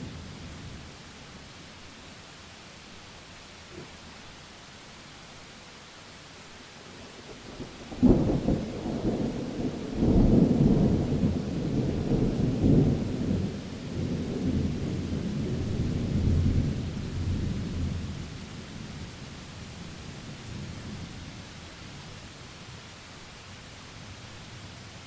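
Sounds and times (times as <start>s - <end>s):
rain hissing: 0.0s - 25.0s
thunder rumbling: 7.6s - 18.4s.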